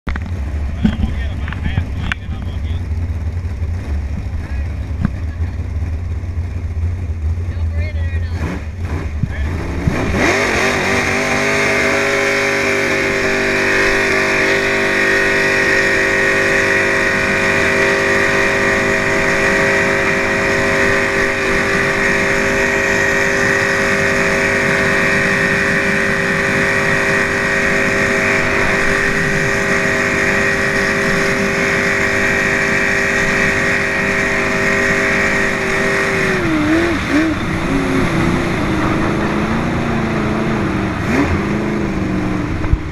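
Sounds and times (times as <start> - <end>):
jet boat engine running hard: 0.2 - 42.9.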